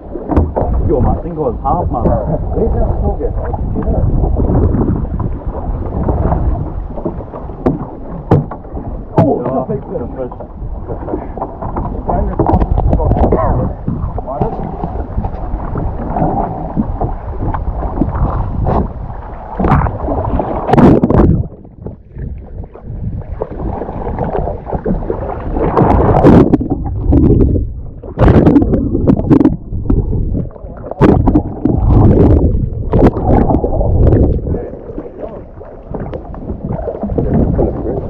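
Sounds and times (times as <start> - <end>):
water noise: 0.0 - 38.0
wind rumble on microphone: 0.0 - 38.0.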